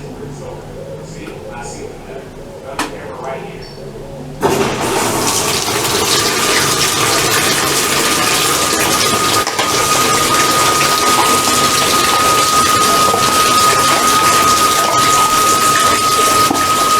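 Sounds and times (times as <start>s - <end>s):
water rushing into washing machine: 4.4s - 16.9s
thin steady whistle: 8.9s - 16.9s.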